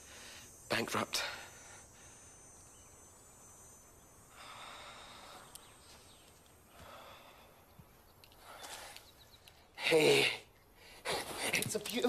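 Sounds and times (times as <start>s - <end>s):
faint breathy hisses: 0.0s - 0.5s, 4.3s - 7.6s.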